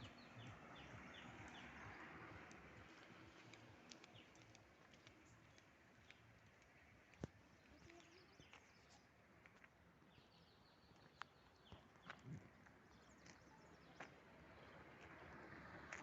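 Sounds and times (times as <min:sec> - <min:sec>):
faint clicks: 0:02.4 - 0:08.6.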